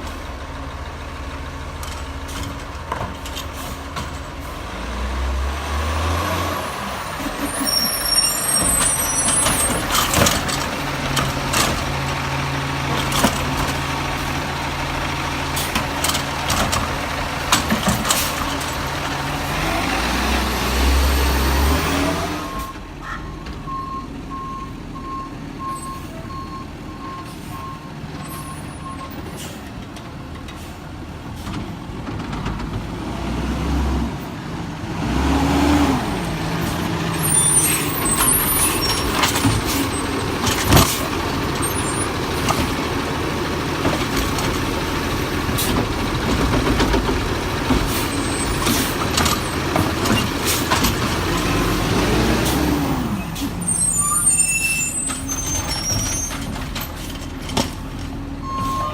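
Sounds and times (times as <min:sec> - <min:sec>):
truck engine revving: 0:03.6 - 0:23.0, 0:30.9 - 0:58.6
reversing alarm beeping: 0:22.4 - 0:29.2, 0:58.4 - 0:58.9.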